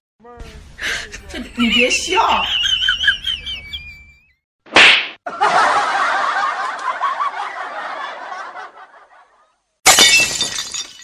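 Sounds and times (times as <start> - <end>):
snickering laughter: 2.5 - 4.1.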